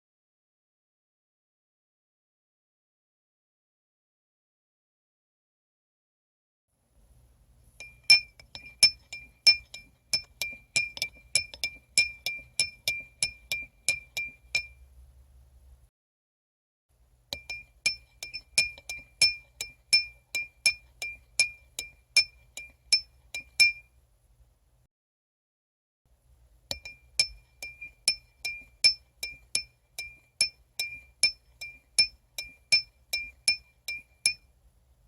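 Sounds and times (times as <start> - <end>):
metal spoon clinking in cup: 7.8 - 14.8, 17.3 - 23.9, 26.7 - 34.5.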